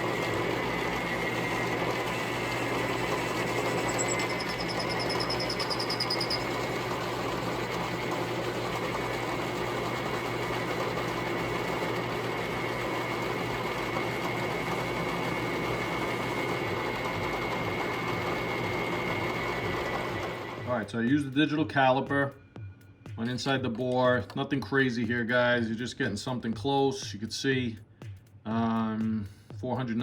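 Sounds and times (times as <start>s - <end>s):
metal lathe running: 0.0s - 20.8s.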